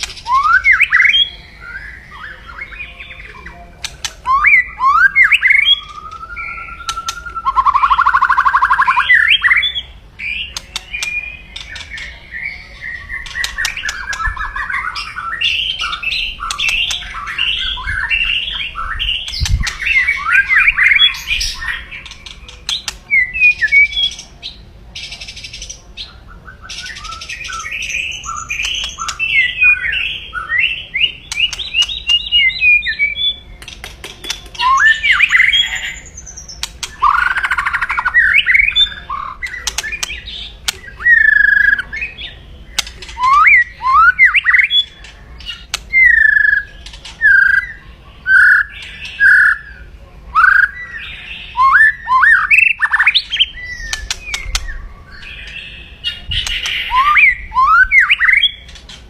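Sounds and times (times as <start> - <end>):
bird whistled notes: 4.2 - 21.9, 34.2 - 40.1, 50.4 - 58.7.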